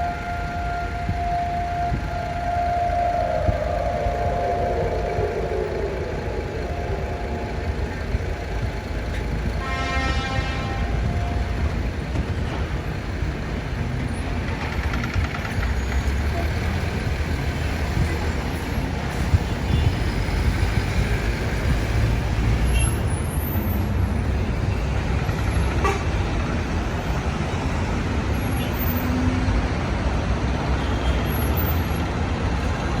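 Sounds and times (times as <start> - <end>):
passing traffic: 0.0 - 33.0
vehicle horn: 9.6 - 11.8.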